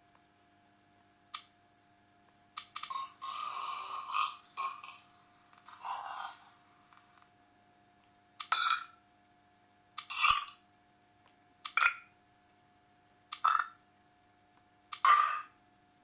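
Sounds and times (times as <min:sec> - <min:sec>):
sharp click: 0:01.3 - 0:01.6, 0:02.6 - 0:03.0
recorded burps: 0:02.9 - 0:05.1, 0:08.5 - 0:09.0, 0:10.1 - 0:10.6, 0:11.8 - 0:12.1, 0:13.4 - 0:13.8, 0:15.0 - 0:15.6.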